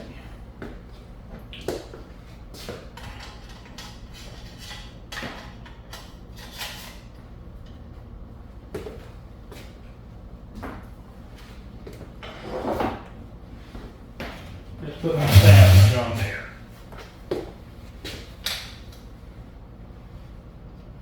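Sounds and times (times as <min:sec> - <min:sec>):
steady low hum: 0:14.8 - 0:16.5.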